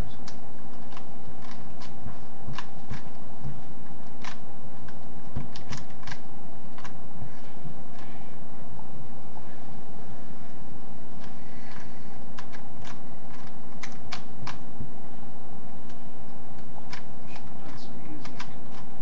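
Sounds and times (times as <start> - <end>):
puzzle cube clicking as turned: 0.2 - 3.2, 4.0 - 7.0, 11.2 - 14.6, 16.6 - 17.5, 18.2 - 18.9.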